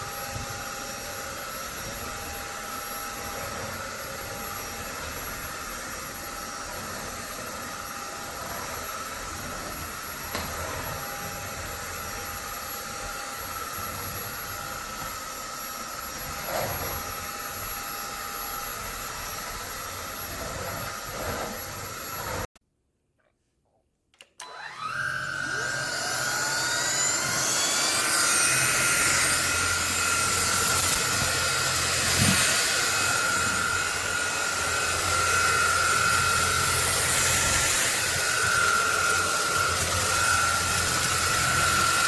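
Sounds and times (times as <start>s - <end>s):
stick vacuum running: 24.3s - 42.0s.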